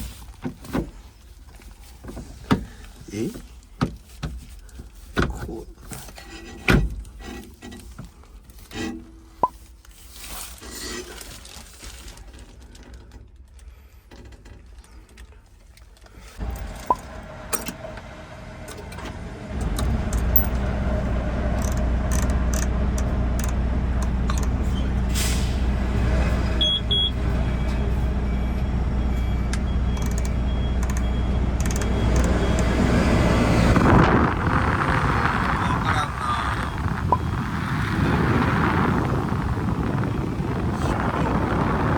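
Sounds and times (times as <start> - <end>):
soft handling and rustling: 0.0 - 6.4, 9.5 - 16.4
diesel engine idling: 16.4 - 41.9
rushing noise: 23.2 - 41.9
short high beeps: 26.6 - 27.2.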